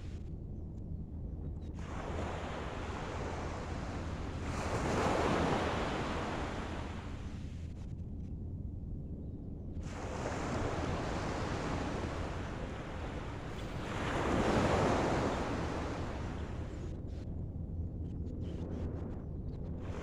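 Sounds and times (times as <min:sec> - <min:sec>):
ocean waves washing ashore: 0:01.8 - 0:07.2, 0:09.8 - 0:16.8.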